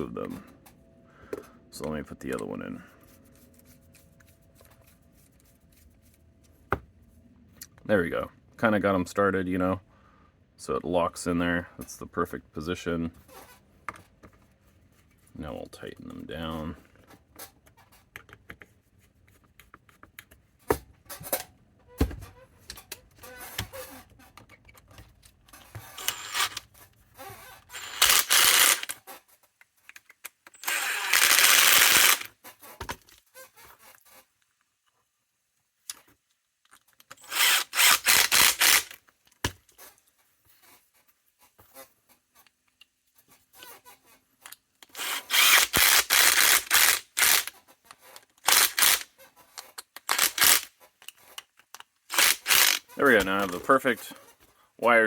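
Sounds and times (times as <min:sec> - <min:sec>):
power drill driving screws into wood: 0:25.8 - 0:26.7, 0:27.7 - 0:29.0, 0:30.5 - 0:32.3, 0:37.2 - 0:39.0, 0:44.9 - 0:47.5, 0:48.4 - 0:49.1, 0:50.0 - 0:50.7, 0:52.1 - 0:52.9.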